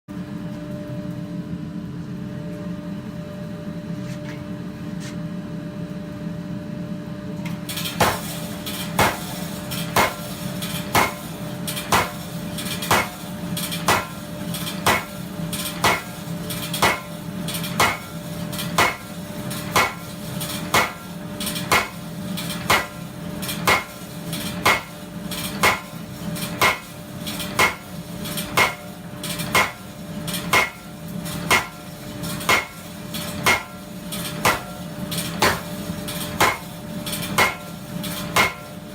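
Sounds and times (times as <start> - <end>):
steady motor hum: 0.1 - 38.9
power hammer striking steel: 7.8 - 38.9.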